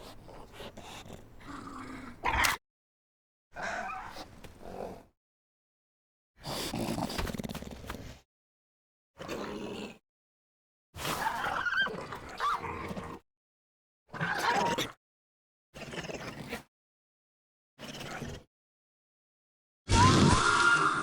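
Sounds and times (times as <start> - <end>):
creature growling and squealing calls: 2.0 - 2.6, 19.9 - 21.0.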